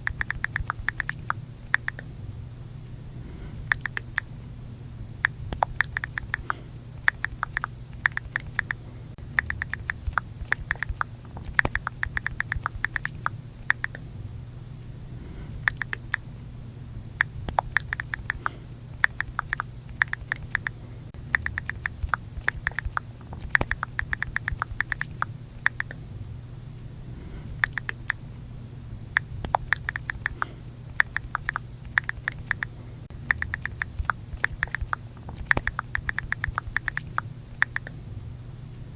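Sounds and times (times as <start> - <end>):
phone keyboard clicks: 0.0 - 2.0, 3.7 - 4.2, 5.5 - 8.8, 9.4 - 14.0, 17.5 - 20.7, 21.4 - 26.0, 27.6 - 28.2, 29.4 - 32.7, 33.3 - 37.9
faint low hum: 0.0 - 38.9.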